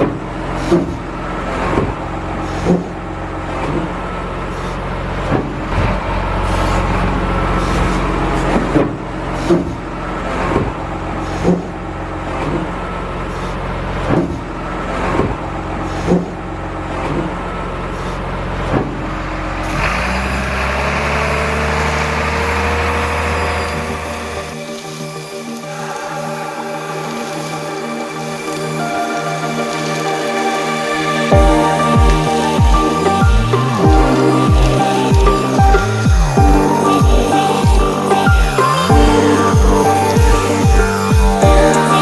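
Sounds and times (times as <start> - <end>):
motor and hydraulic hum: 0.0 - 42.0
rising whine: 19.6 - 42.0.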